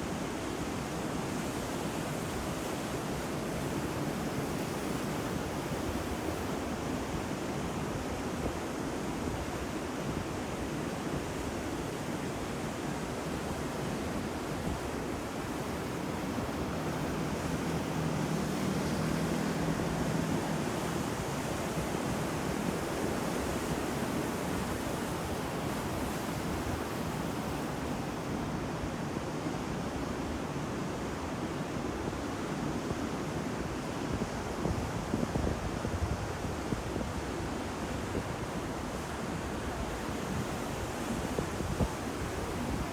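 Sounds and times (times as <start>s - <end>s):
ocean waves breaking: 14.1s - 28.8s.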